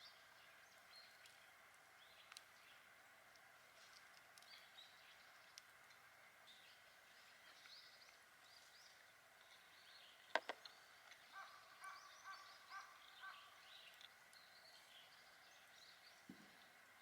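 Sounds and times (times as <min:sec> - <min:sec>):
birds chirping: 0:06.5 - 0:17.0.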